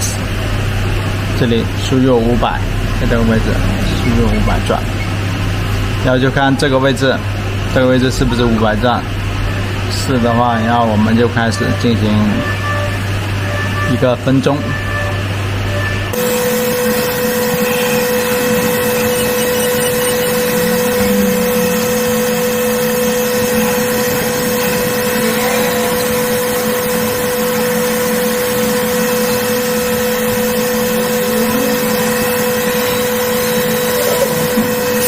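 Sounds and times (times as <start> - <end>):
cnc machine humming: 0.0 - 35.0
spindle constant tone: 2.9 - 35.0.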